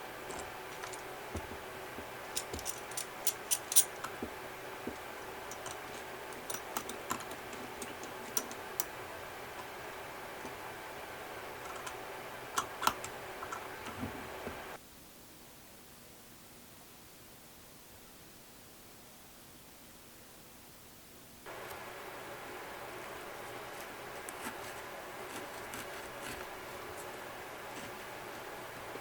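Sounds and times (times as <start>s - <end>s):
steady background hum: 0.0s - 15.2s, 20.9s - 29.0s
hand tools clicking and tapping: 0.2s - 8.9s, 11.6s - 12.0s, 12.6s - 14.6s, 23.7s - 29.0s.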